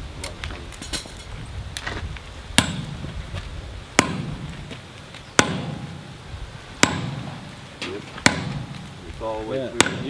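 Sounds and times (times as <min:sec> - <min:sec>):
hammer striking metal on anvil: 0:02.6 - 0:03.0, 0:04.0 - 0:04.4, 0:05.4 - 0:06.1, 0:06.8 - 0:07.6, 0:08.2 - 0:09.0, 0:09.7 - 0:10.0.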